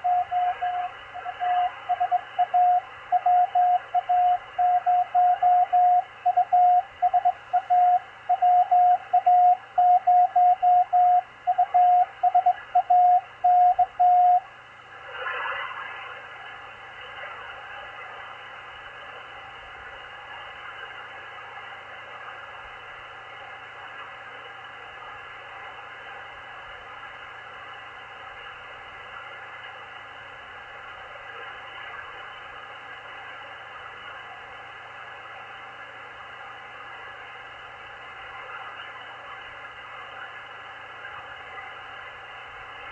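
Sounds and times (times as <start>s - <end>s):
morse code beeps: 0.0s - 14.4s.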